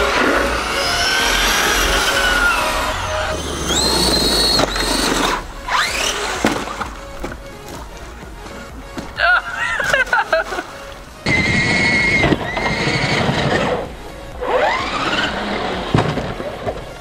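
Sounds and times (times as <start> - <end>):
electric motor whining: 0.0 - 7.8, 11.2 - 17.0.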